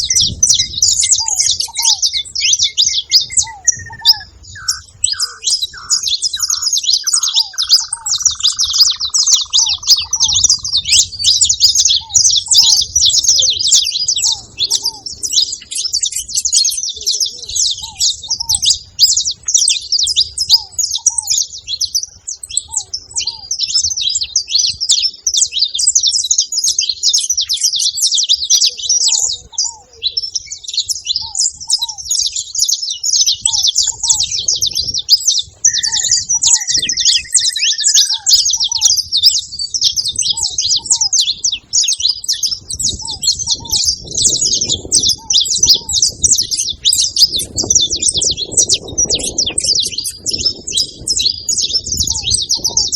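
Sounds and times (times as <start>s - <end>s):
finches chirping: 0.0s - 52.9s
brief whistled tone: 35.7s - 37.9s.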